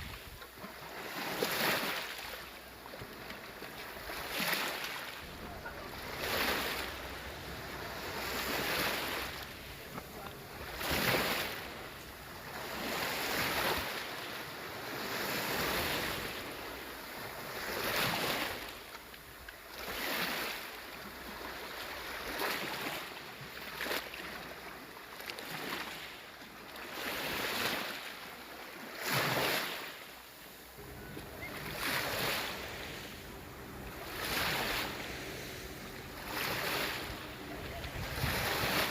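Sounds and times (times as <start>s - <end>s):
small waves washing onto shore: 0.0s - 38.9s.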